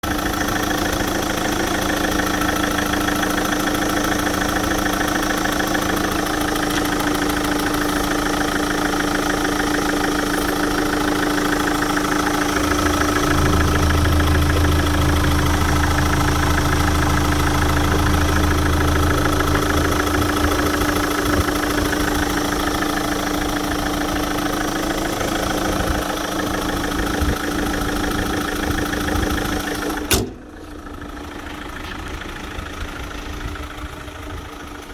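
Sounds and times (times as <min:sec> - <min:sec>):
car engine idling: 0:00.0 - 0:34.9
deep loud hum: 0:11.4 - 0:24.4.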